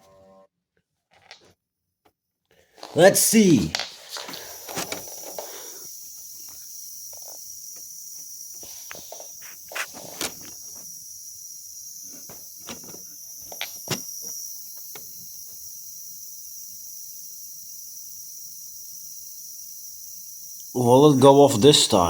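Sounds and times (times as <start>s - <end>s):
high-pitched hiss: 2.8s - 22.0s.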